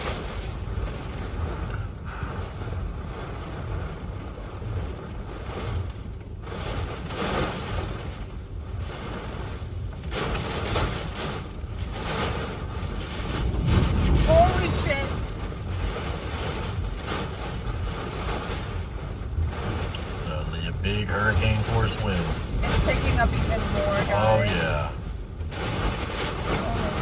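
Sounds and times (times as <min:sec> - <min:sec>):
wind buffeting microphone: 0:00.0 - 0:20.4.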